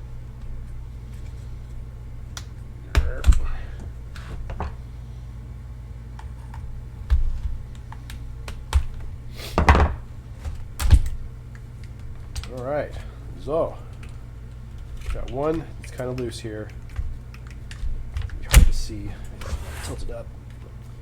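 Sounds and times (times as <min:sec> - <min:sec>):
low hum: 0:00.0 - 0:21.0
hard plastic snapping: 0:06.1 - 0:12.7, 0:13.9 - 0:19.5.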